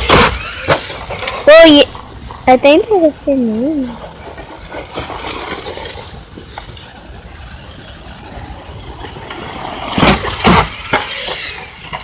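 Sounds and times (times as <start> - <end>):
toy car running hiss: 0.0 - 12.0
loud short rushes: 8.8 - 12.0.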